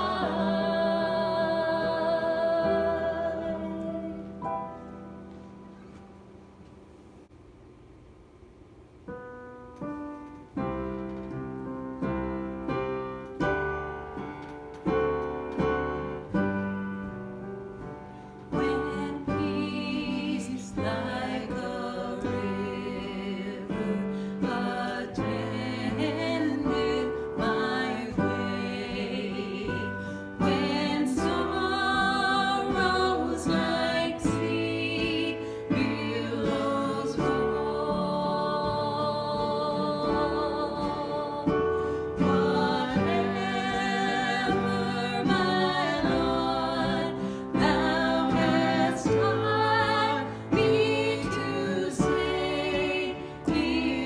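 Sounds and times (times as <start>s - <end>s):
person singing: 0.0s - 4.5s, 18.5s - 54.0s
piano chords: 0.0s - 7.3s, 9.0s - 54.0s.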